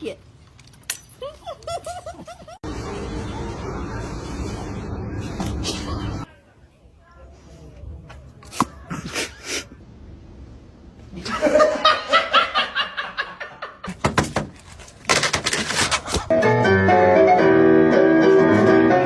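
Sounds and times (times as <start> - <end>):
person laughing hard: 1.2 - 2.6
music: 16.3 - 19.0.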